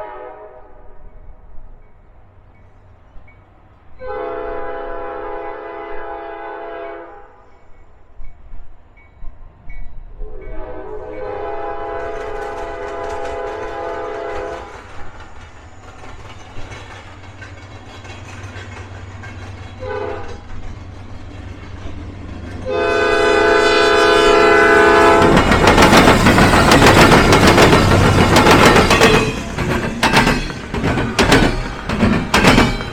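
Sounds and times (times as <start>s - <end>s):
locomotive air horn blasts: 0.0s - 0.9s, 4.0s - 7.4s, 10.2s - 14.7s, 19.8s - 20.4s, 22.6s - 25.5s
low train rumble: 0.0s - 32.9s.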